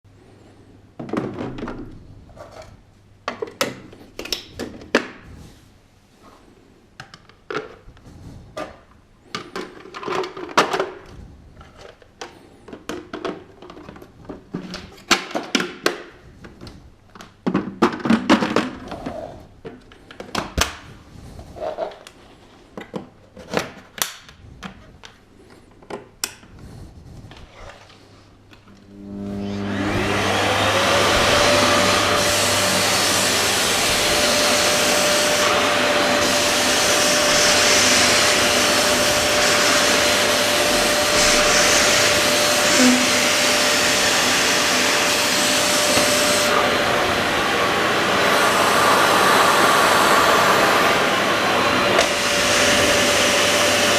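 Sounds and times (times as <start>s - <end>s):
vacuum cleaner parts clicking and knocking: 1.0s - 5.2s, 8.6s - 20.8s, 21.7s - 26.5s.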